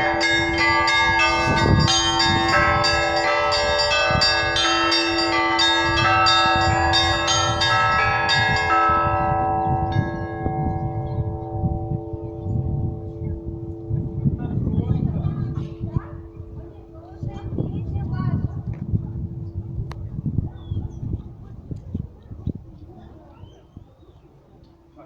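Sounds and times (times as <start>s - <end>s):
low bell ringing tone: 0.0s - 18.1s
small church bells struck quickly: 0.0s - 18.3s.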